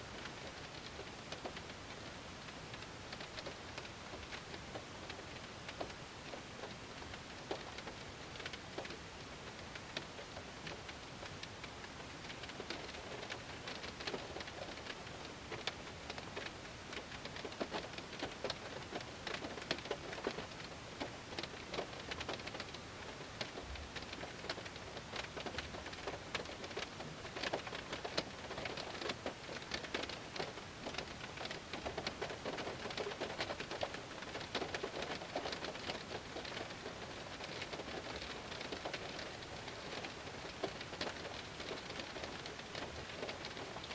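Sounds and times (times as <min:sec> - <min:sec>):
heavy rain on a car: 0:00.0 - 0:43.9.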